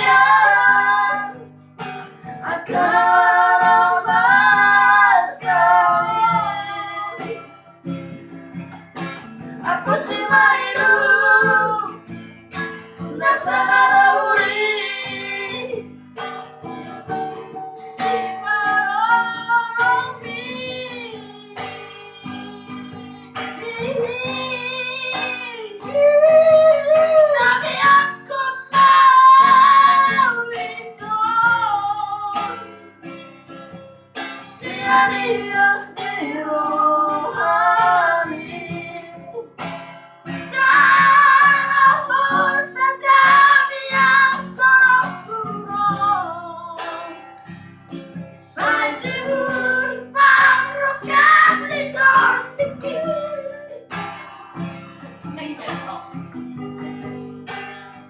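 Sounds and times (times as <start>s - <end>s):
child singing: 0.0s - 1.4s, 2.5s - 7.4s, 9.7s - 11.9s, 13.2s - 15.8s, 18.0s - 22.8s, 23.6s - 32.6s, 34.6s - 39.4s, 40.5s - 47.0s, 48.6s - 53.8s
strummed acoustic guitar: 0.0s - 58.0s.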